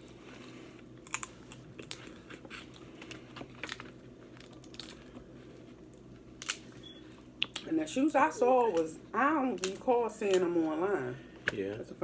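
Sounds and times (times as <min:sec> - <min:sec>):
crab shells cracking and chewing: 0:01.0 - 0:05.2, 0:05.9 - 0:06.7, 0:09.5 - 0:10.4.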